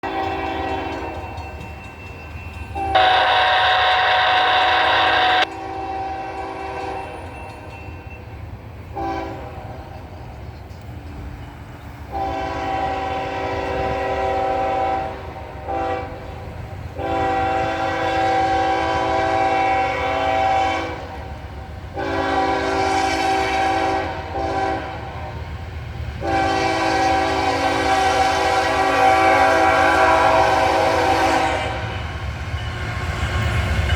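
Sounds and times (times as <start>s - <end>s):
locomotive air horn blasts: 0.0s - 1.1s, 2.8s - 7.2s, 8.9s - 9.6s, 12.1s - 16.4s, 17.0s - 21.3s, 21.9s - 25.4s, 26.2s - 32.0s
diesel locomotive rumble: 0.0s - 33.9s.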